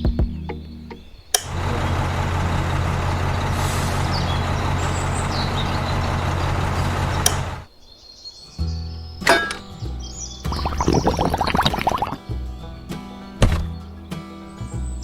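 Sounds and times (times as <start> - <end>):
heavy engine idling: 1.4 - 7.7
faint bird chirps: 3.1 - 15.0.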